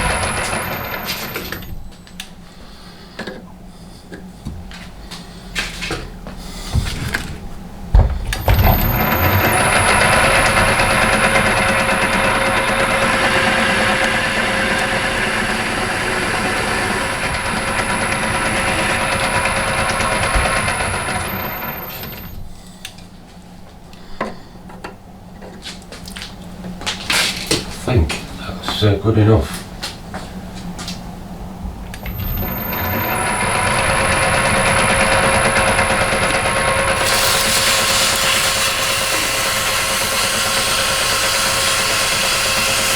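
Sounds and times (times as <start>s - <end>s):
lathe running with high whine: 0.0s - 1.7s, 8.3s - 22.4s, 32.0s - 42.9s
lathe clunks: 6.7s - 22.3s.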